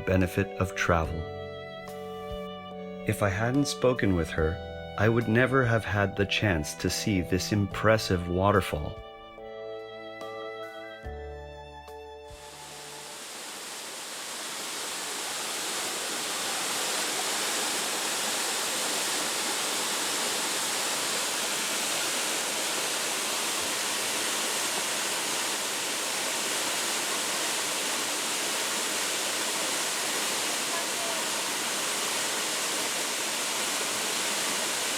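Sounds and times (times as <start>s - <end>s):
waterfall pouring: 12.4s - 34.9s.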